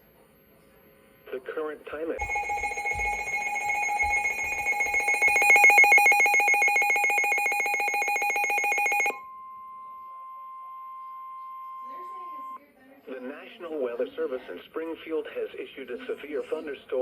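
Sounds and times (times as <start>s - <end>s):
pulsing electronic warble: 2.2s - 9.2s
steady single-pitch alarm tone: 2.2s - 12.6s.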